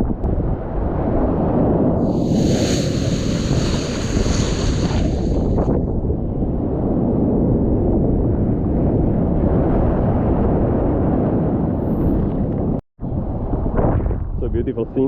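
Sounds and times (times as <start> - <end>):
strong wind on microphone: 0.0 - 15.0
heavy surf: 2.0 - 5.9.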